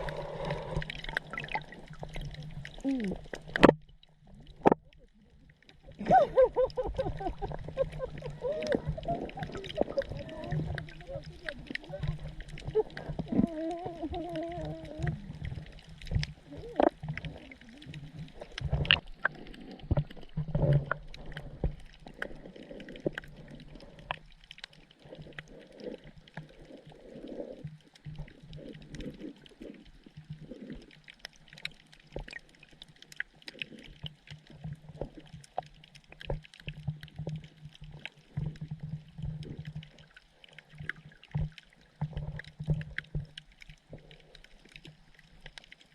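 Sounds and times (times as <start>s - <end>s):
sharp clicks underwater: 0.0s - 5.0s, 6.6s - 45.9s
fish grunts and pops underwater: 0.0s - 5.1s, 5.8s - 45.9s.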